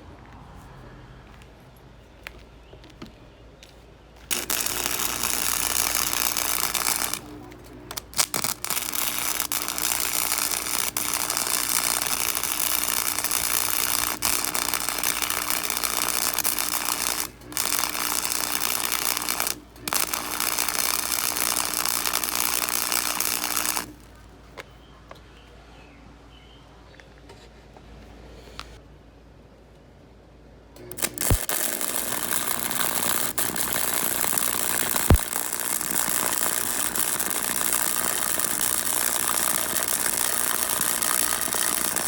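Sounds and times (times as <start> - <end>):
welding arc crackle: 4.2 - 24.2, 30.8 - 42.0.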